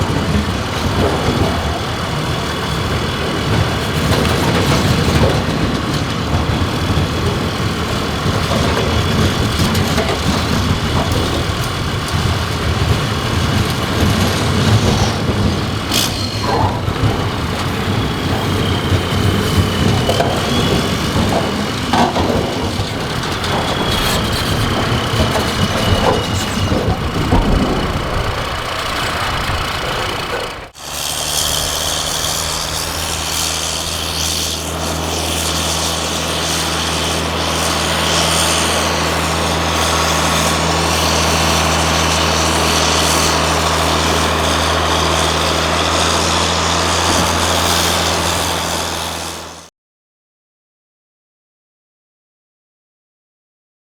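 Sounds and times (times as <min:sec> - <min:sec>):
diesel locomotive rumble: 0:00.0 - 0:49.7
low engine hum: 0:00.0 - 0:49.7
faint high squeals: 0:23.4 - 0:27.3.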